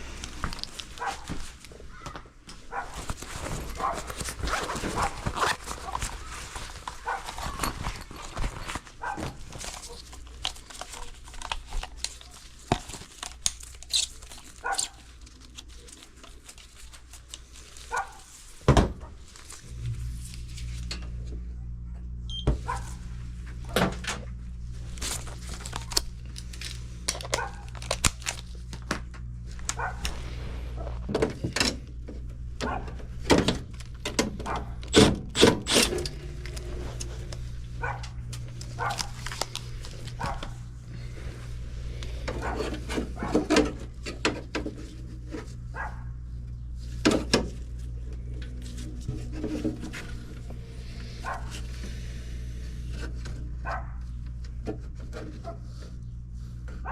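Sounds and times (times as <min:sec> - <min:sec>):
low machine hum: 0:00.0 - 0:56.9.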